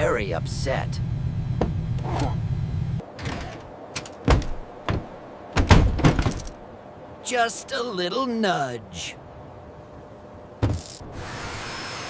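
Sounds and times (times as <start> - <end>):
low steady rumble: 0.0 - 3.1
thuds and knocks: 4.2 - 6.6.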